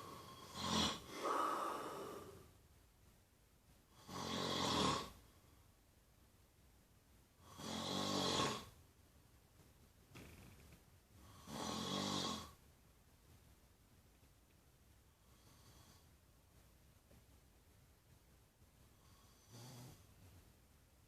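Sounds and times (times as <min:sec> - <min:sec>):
person snoring: 0:00.0 - 0:02.5, 0:03.9 - 0:05.2, 0:07.4 - 0:08.7, 0:11.2 - 0:12.6.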